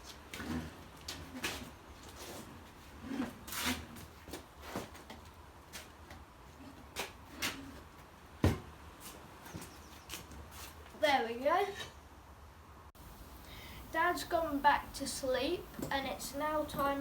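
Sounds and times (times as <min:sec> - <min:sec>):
tyre changer knocks and scrapes: 0:08.4 - 0:08.8.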